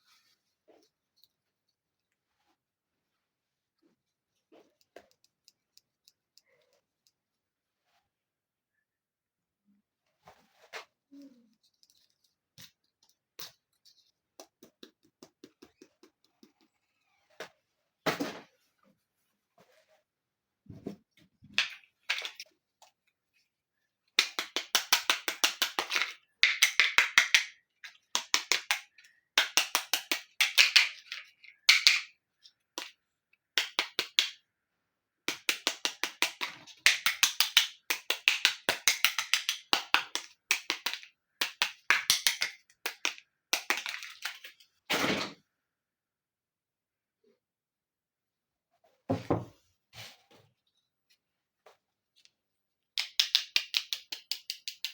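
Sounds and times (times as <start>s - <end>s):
light tapping clicks on toy pieces: 4.8s - 7.2s, 53.0s - 54.9s.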